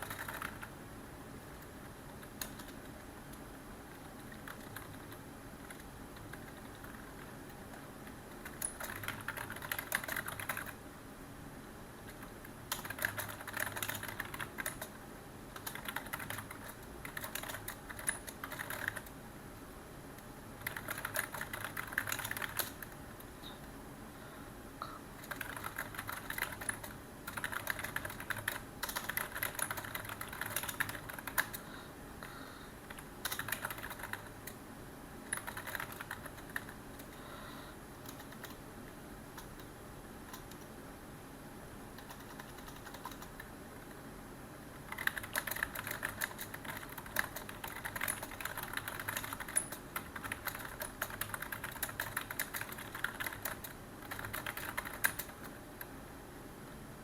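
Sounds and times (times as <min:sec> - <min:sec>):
typing on computer keyboard: 0:00.0 - 0:00.7, 0:01.6 - 0:03.0, 0:03.9 - 0:10.8, 0:12.1 - 0:19.1, 0:20.6 - 0:23.0, 0:25.2 - 0:31.6, 0:32.9 - 0:34.6, 0:35.3 - 0:37.2, 0:38.0 - 0:38.6, 0:40.3 - 0:40.7, 0:42.0 - 0:43.5, 0:44.8 - 0:55.9
faint room hiss: 0:00.0 - 0:57.0.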